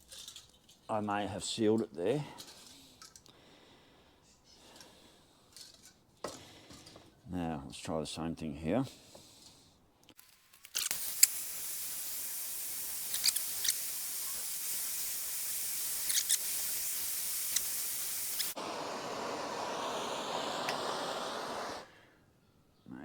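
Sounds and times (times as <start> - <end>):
sharp crackles: 10.2 - 18.6
soldering torch hissing: 10.7 - 21.9.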